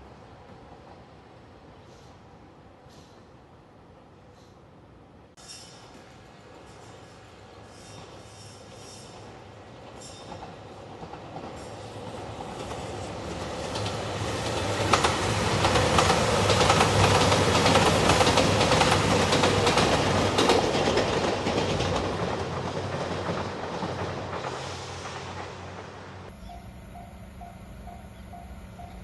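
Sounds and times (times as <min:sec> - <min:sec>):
train passing: 0:00.0 - 0:29.0
wheels clacking over rail joints: 0:07.6 - 0:29.0.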